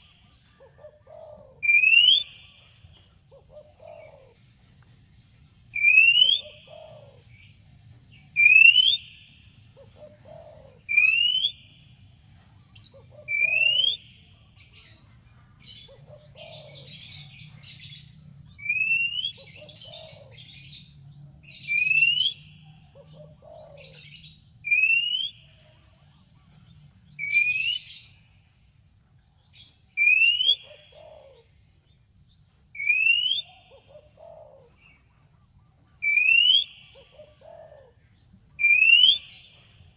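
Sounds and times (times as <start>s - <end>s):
bird calling with rising whistle: 1.6s - 2.4s, 5.8s - 6.8s, 8.4s - 9.1s, 10.8s - 11.7s, 13.3s - 14.1s, 18.6s - 20.2s, 21.6s - 22.4s, 24.7s - 25.4s, 27.2s - 28.0s, 30.0s - 30.7s, 32.8s - 33.6s, 36.0s - 37.0s, 38.6s - 39.5s.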